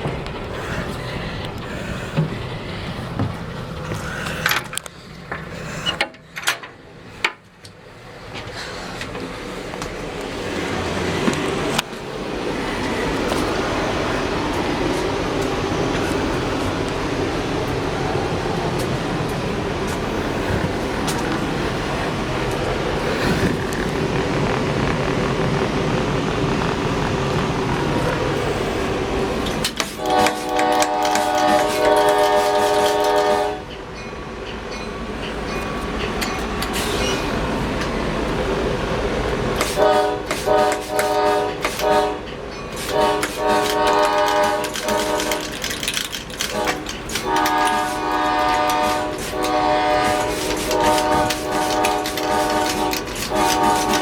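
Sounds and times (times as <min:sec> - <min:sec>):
locomotive rumble: 0:00.0 - 0:54.0
locomotive air horn: 0:19.9 - 0:33.7, 0:39.6 - 0:45.8, 0:46.4 - 0:54.0.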